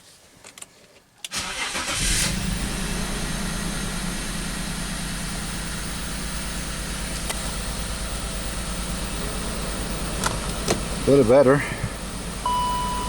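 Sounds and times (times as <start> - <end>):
starter cranking engine: 1.3 - 2.4
car engine idling with misfire: 1.4 - 13.0.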